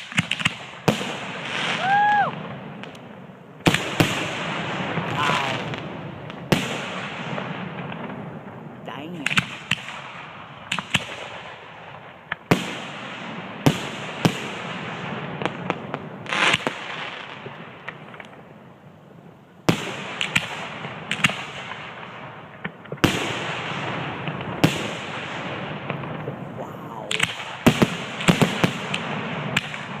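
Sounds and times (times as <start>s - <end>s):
distant firework bursts and echoes: 0.0s - 30.0s
firework shells bursting: 19.9s - 30.0s.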